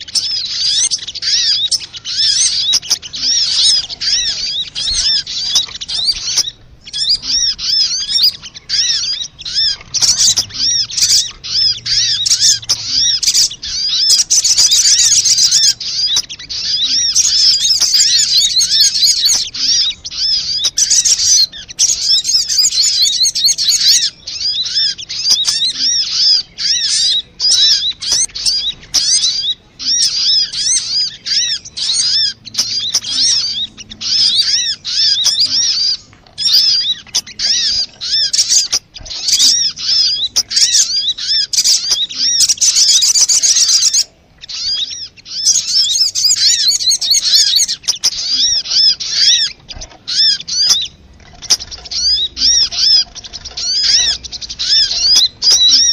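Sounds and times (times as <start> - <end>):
sunbird twittering: 0.0 - 55.9.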